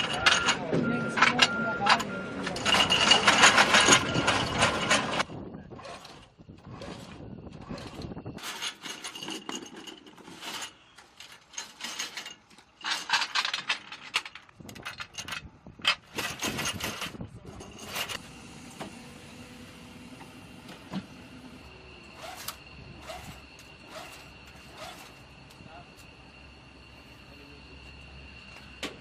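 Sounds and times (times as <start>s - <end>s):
faint steady high tone: 0.1s - 2.7s, 25.2s - 28.8s.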